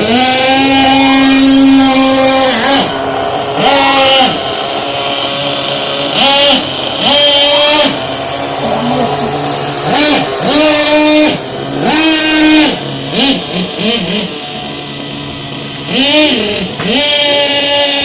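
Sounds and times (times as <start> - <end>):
small engine revving: 0.0 - 18.0.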